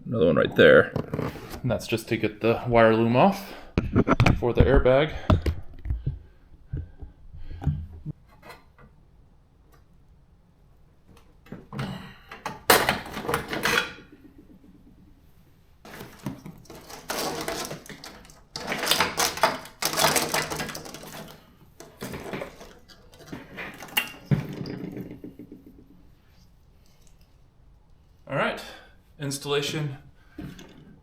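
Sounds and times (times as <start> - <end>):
hand tools and parts clinking: 11.4 - 15.1, 15.8 - 26.0.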